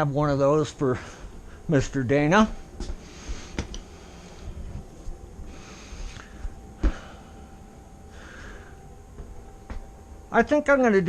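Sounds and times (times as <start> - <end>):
thin steady hum: 0.0 - 11.0.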